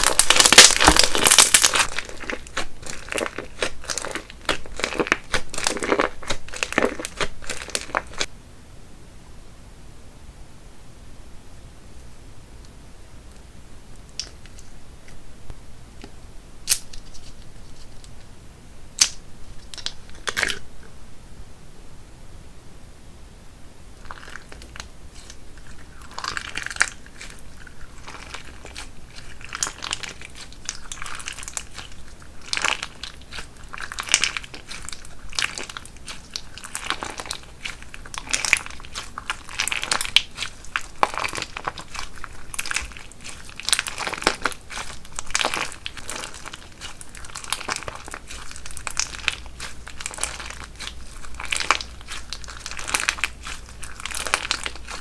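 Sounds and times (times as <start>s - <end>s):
crunchy slime crackling: 0.0s - 8.3s, 24.0s - 55.0s.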